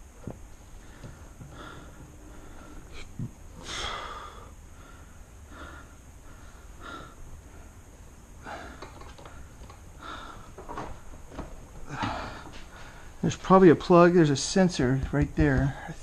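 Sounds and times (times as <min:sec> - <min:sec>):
person breathing: 0:00.7 - 0:10.7, 0:11.8 - 0:13.2, 0:15.6 - 0:16.0.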